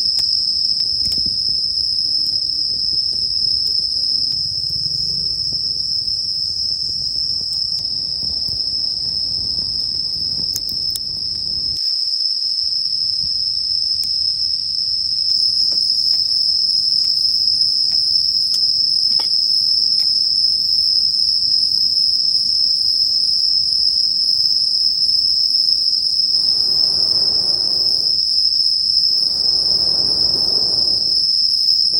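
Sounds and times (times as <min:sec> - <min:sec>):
crickets trilling: 0:00.0 - 0:31.9
low noise swells: 0:26.4 - 0:28.2, 0:29.1 - 0:31.2.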